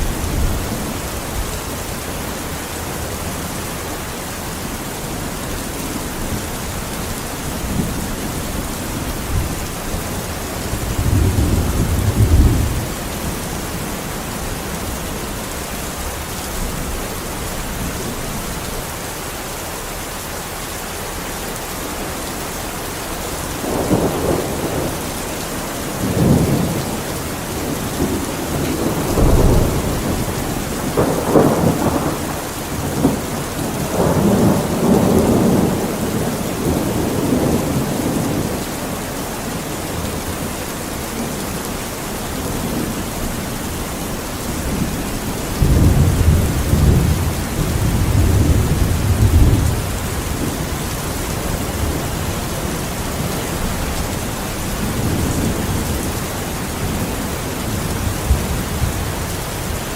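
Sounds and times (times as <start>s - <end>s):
heavy rain hissing: 0.0s - 59.9s
thunder rumbling: 5.2s - 15.6s, 23.6s - 38.7s, 42.4s - 59.9s.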